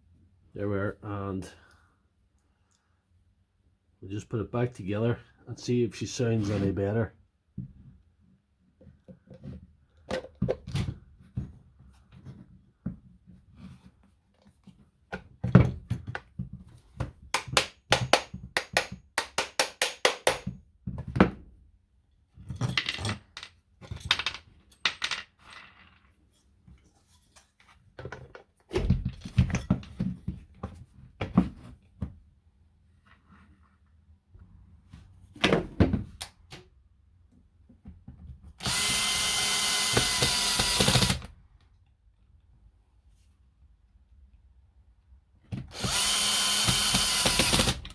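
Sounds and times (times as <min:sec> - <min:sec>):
tools clicking and knocking: 0:17.4 - 0:20.6.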